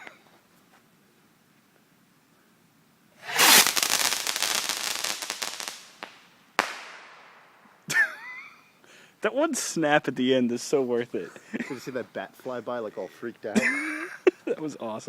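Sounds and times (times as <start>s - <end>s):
firework sharp snap: 3.2s - 7.7s
firework crackling burst: 3.2s - 7.9s.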